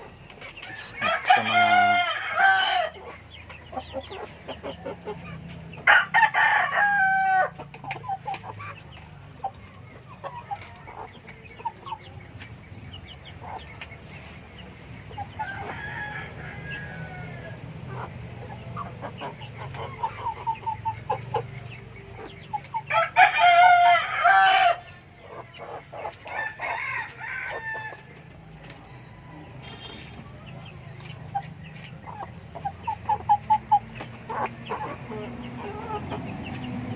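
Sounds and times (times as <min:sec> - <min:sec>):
chickens clucking: 0:00.0 - 0:36.9
rooster crowing: 0:00.8 - 0:03.0, 0:05.8 - 0:07.6, 0:15.4 - 0:17.6, 0:22.9 - 0:24.8, 0:26.3 - 0:28.1.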